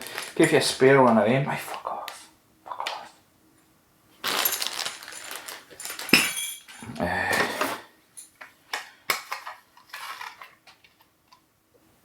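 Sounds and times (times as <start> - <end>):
metal accessories clattering: 4.3 - 8.4.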